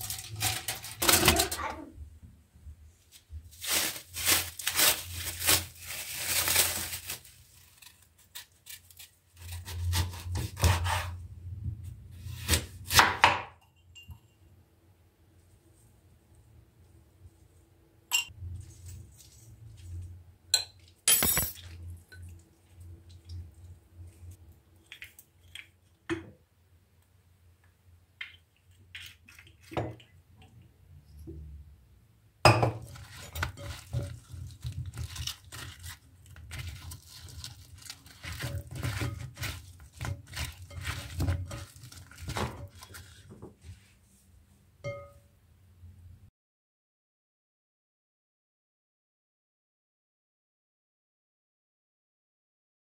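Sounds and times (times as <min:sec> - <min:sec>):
utensils and dishes clinking: 0:20.6 - 0:22.3.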